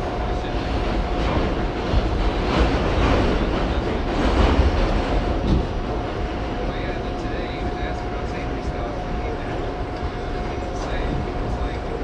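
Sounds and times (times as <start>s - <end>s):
subway train rumbling: 0.0s - 12.0s
wheels knocking and rattling: 0.7s - 6.2s.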